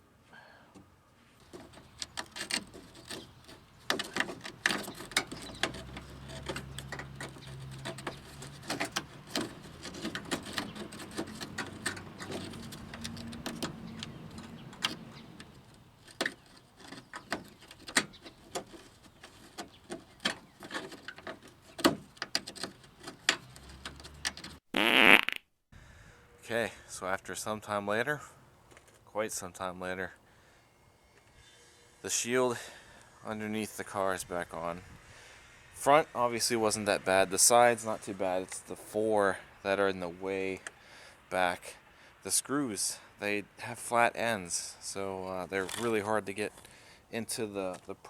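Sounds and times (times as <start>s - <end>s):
hand tools clicking on plastic: 0.7s - 24.6s.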